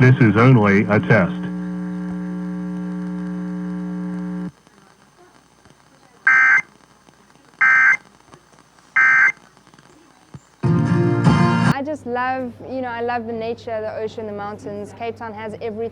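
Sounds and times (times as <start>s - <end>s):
electrical mains hum: 0.0s - 14.9s.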